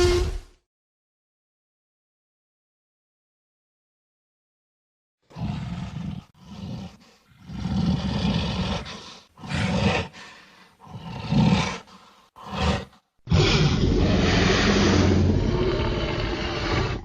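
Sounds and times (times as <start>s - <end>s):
deep rough monster roars: 12.4s - 17.0s.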